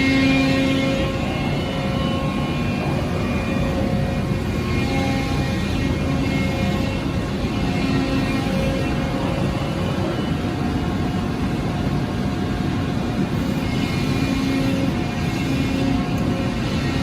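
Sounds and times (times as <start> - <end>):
hydraulic pump humming: 0.0 - 11.5.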